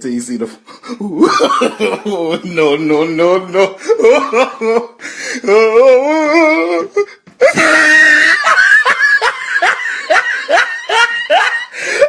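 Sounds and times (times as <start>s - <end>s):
person wailing: 1.0s - 9.3s
harsh cry: 5.4s - 11.7s.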